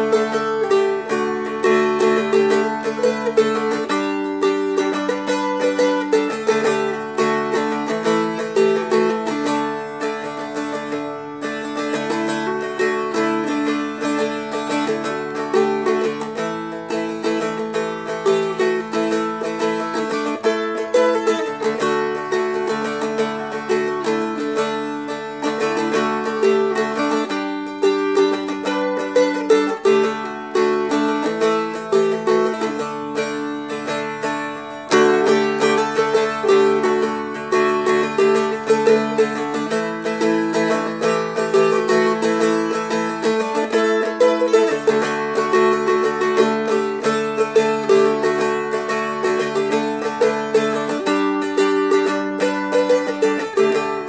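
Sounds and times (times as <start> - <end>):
flatpicked dulcimer melody: 0.0 - 54.0.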